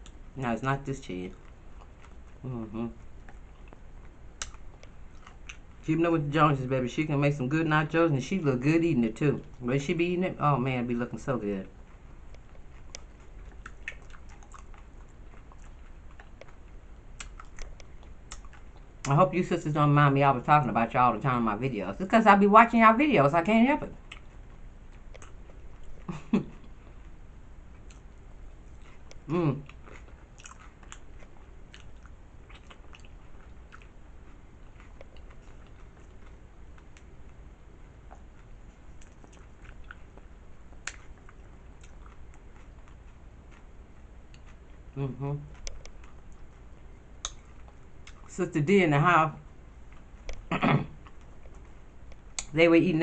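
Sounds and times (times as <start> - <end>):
chewing with wet mouth clicks: 1.2 - 5.9, 11.6 - 19.2, 23.9 - 37.4, 38.0 - 48.3, 49.8 - 52.6.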